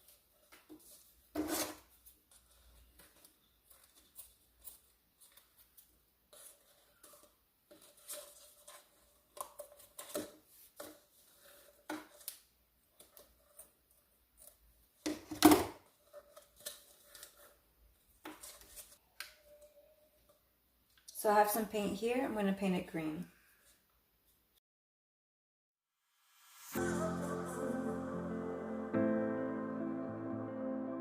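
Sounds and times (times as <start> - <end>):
craft materials rustling and scraping: 0.0 - 19.6.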